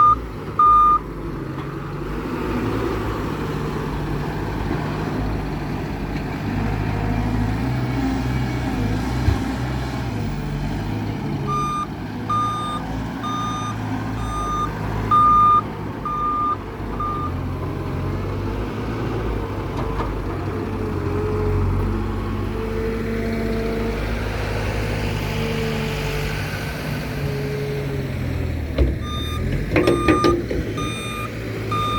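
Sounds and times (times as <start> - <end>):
reversing alarm beeping: 0.0 - 1.0, 11.5 - 17.3, 29.0 - 31.9
diesel engine running: 0.0 - 31.9.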